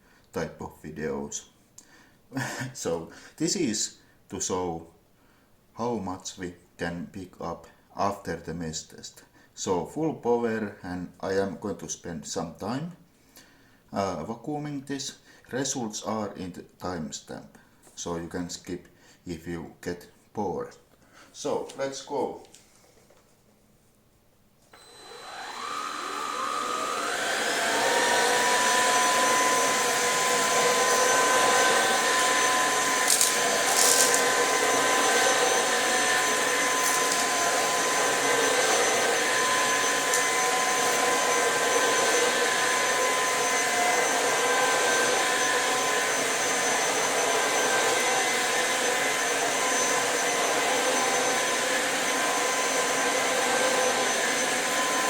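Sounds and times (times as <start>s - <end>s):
vacuum motor whine: 24.7s - 55.0s.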